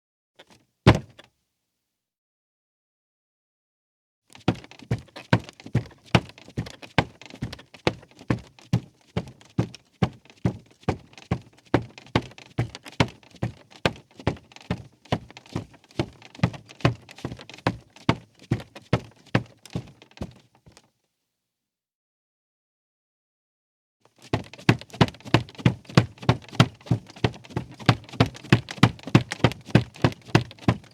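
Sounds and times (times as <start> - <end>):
bare footsteps on creaky rug: 24.2 - 30.9.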